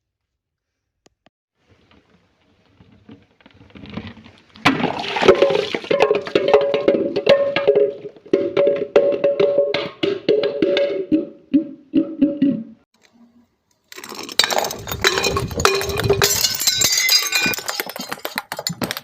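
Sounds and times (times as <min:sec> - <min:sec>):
glass crushing and crunching: 0:13.9 - 0:19.0.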